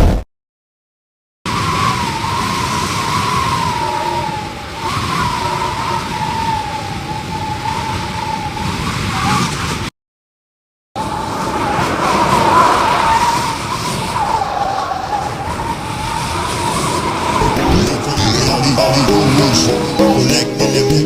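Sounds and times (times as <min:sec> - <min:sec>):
siren-like high tone: 0:01.5 - 0:08.7, 0:15.5 - 0:20.7.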